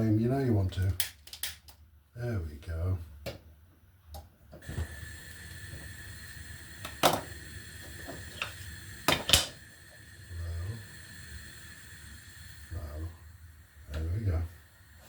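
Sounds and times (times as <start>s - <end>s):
gas burner hissing: 4.5s - 15.0s.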